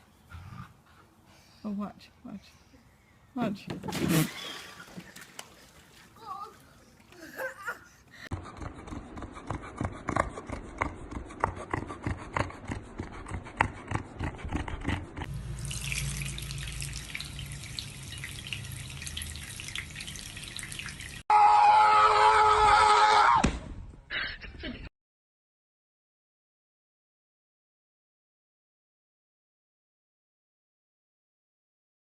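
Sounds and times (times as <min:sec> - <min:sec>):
water splashing and dripping: 0:03.8 - 0:07.4, 0:15.3 - 0:21.2.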